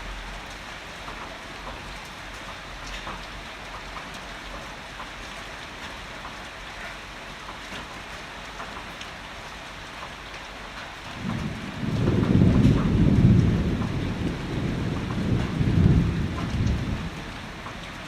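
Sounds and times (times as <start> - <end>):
heavy rain falling: 0.0 - 18.0
low rumble of thunder: 11.0 - 18.0.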